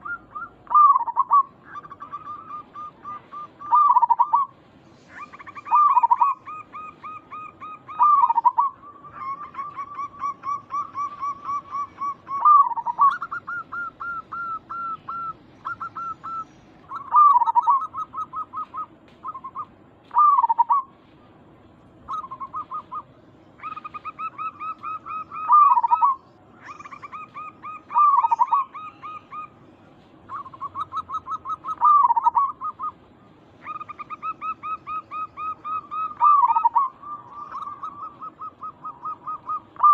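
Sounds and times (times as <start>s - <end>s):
dove rolling coo: 0.0s - 4.5s, 5.1s - 20.9s, 22.1s - 29.5s, 30.3s - 33.0s, 33.6s - 39.9s
doves calling short clipped notes: 0.0s - 33.0s.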